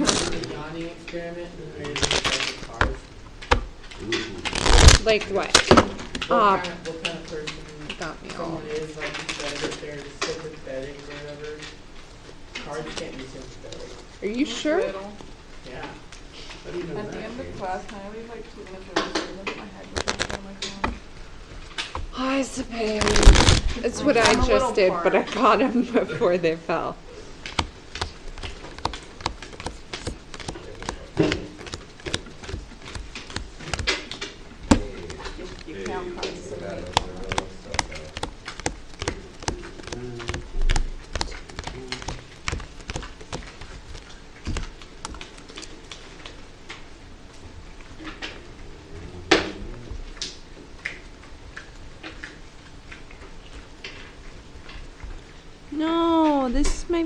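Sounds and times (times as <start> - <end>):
playing cards tapping on a desk: 27.5 - 45.3.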